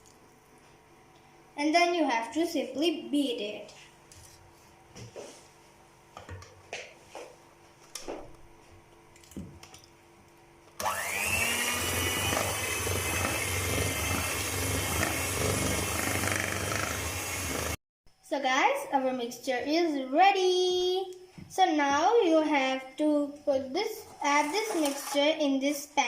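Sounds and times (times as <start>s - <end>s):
electric hand mixer whirring: 10.8s - 17.8s.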